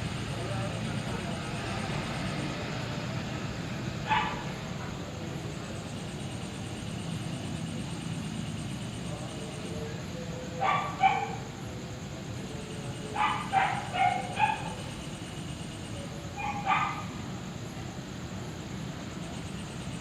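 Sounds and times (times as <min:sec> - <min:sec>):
dog barking: 0:04.0 - 0:04.9, 0:10.6 - 0:11.5, 0:13.2 - 0:15.0, 0:16.4 - 0:17.2.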